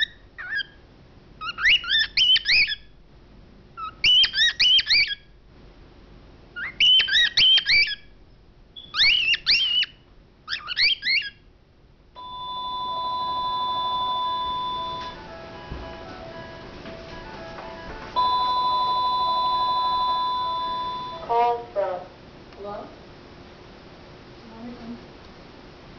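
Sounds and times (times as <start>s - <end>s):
cockatiel chirping: 0.0s - 0.8s, 1.4s - 2.8s, 3.8s - 5.2s, 6.6s - 8.1s, 8.8s - 11.4s
steady electronic tone: 12.2s - 21.3s
music: 14.0s - 19.4s.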